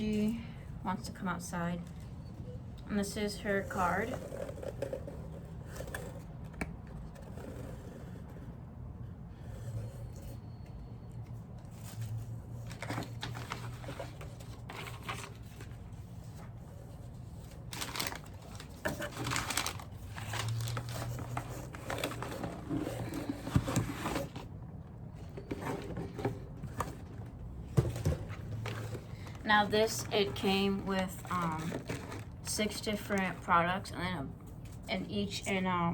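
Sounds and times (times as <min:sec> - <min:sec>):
packaging crinkling and rustling: 0:11.6 - 0:24.6, 0:25.2 - 0:33.5.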